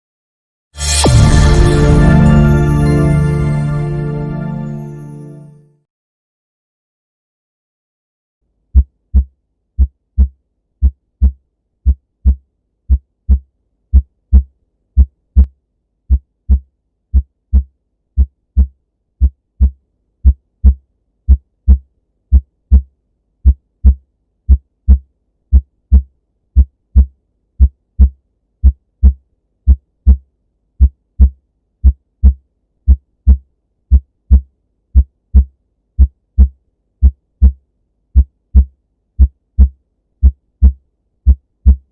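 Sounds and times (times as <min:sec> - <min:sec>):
heartbeat thuds: 0:08.7 - 0:15.5, 0:16.1 - 0:30.2, 0:30.8 - 0:37.6, 0:38.2 - 0:41.9.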